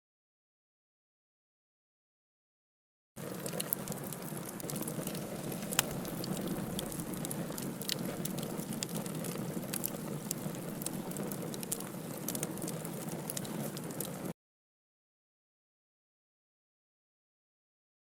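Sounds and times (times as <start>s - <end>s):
campfire hiss: 3.2s - 14.3s
fire crackles and pops: 3.2s - 14.4s.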